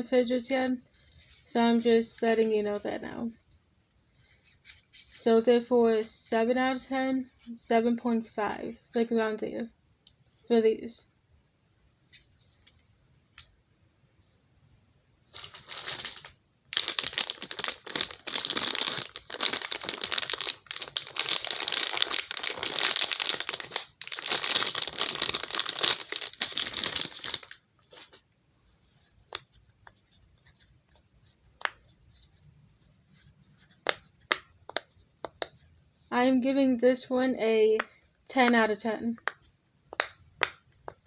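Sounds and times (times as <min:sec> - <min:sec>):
plastic packaging crinkling: 0:15.3 - 0:28.2.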